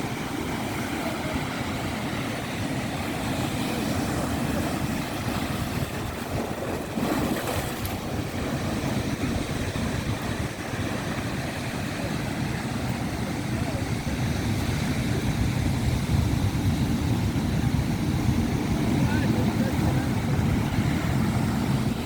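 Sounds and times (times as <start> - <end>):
sea waves washing in: 0.0 - 22.0
wind buffeting the microphone: 0.0 - 22.0.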